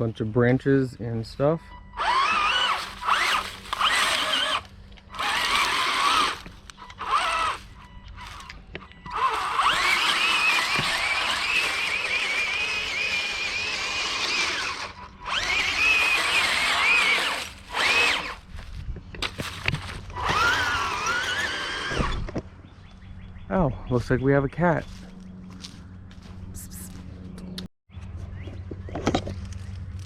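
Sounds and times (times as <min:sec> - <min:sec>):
electric drive motors whining: 0:01.7 - 0:23.3.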